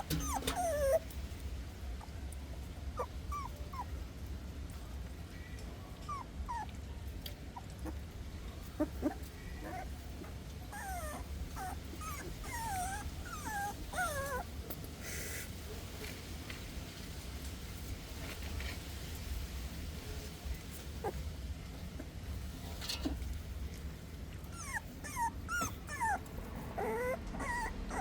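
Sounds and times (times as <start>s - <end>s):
puppies whimpering: 0.0s - 1.1s, 3.0s - 4.0s, 6.0s - 6.8s, 8.7s - 10.0s, 10.6s - 14.5s, 24.5s - 28.0s.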